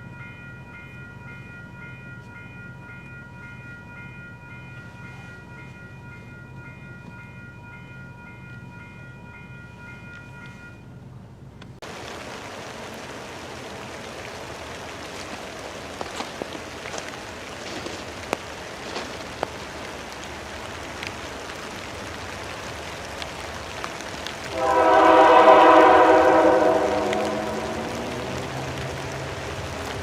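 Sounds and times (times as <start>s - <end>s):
locomotive air horn chord: 24.5s - 29.4s
steady rushing noise: 24.5s - 30.0s.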